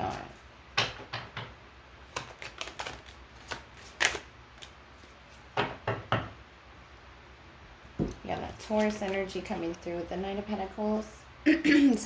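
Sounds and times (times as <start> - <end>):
cards clicking and tapping: 0.8 - 4.8.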